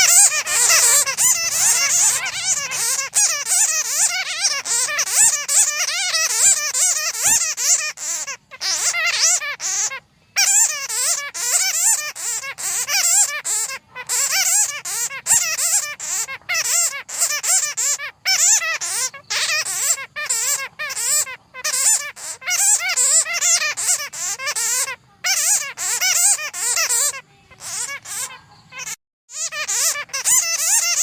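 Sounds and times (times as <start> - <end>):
bats squeaking and chattering: 0.0 - 31.0.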